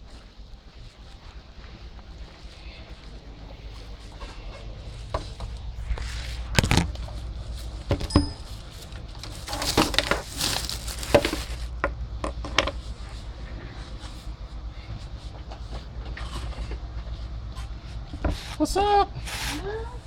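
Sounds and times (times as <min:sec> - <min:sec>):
steady low hum: 0:00.0 - 0:20.0
objects knocking and clinking: 0:07.9 - 0:08.6.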